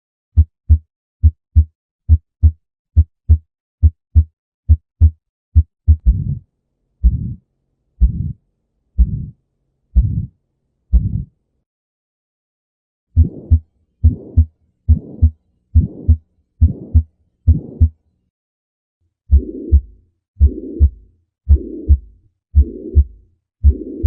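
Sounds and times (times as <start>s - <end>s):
heartbeat: 0.4s - 6.4s, 7.0s - 7.4s, 8.0s - 8.4s, 9.0s - 9.4s, 10.0s - 11.3s, 13.2s - 18.0s, 19.3s - 24.0s
whooshing heart murmur: 5.9s - 6.4s, 7.0s - 7.4s, 13.2s - 17.9s.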